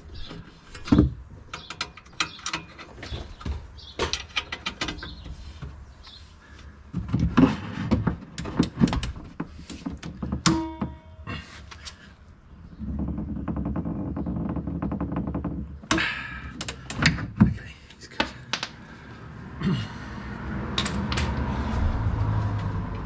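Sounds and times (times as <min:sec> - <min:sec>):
hand tools clicking and knocking: 0:00.7 - 0:05.2, 0:20.8 - 0:21.5.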